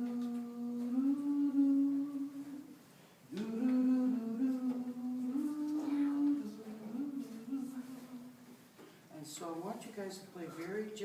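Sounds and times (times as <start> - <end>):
woman humming a melody: 0.0 - 2.7, 3.3 - 8.3.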